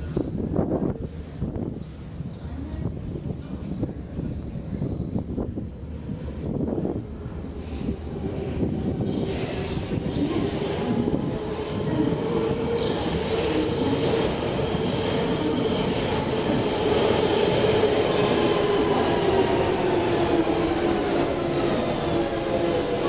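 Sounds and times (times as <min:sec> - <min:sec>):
underground train rumbling: 0:00.0 - 0:23.0.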